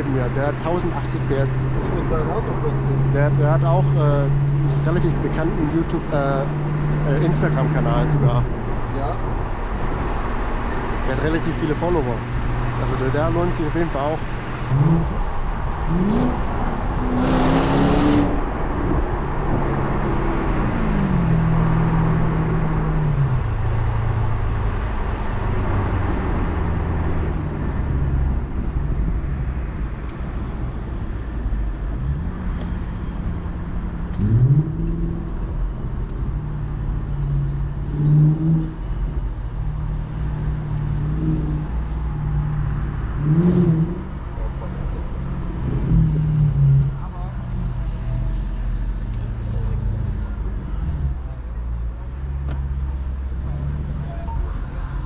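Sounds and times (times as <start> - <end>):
car engine accelerating: 0.0 - 55.0.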